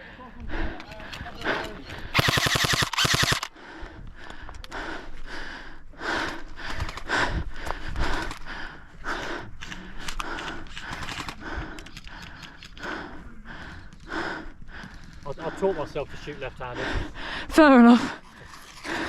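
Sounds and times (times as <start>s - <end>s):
person breathing heavily: 0.0s - 19.0s
airsoft rifle burst: 2.2s - 3.5s.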